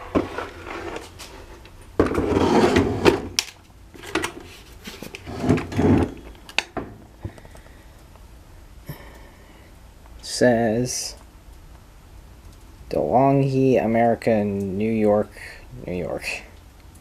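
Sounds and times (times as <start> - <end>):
fan handling scraping and rustling: 0.0 - 7.0.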